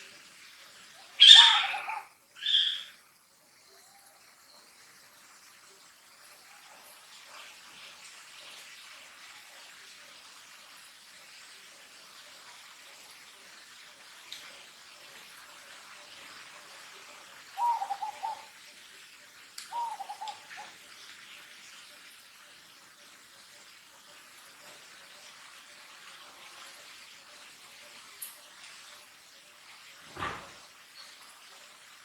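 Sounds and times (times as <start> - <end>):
faint background hiss: 0.0 - 32.0
wavering animal calls: 1.0 - 3.0, 17.6 - 18.5, 19.7 - 20.7.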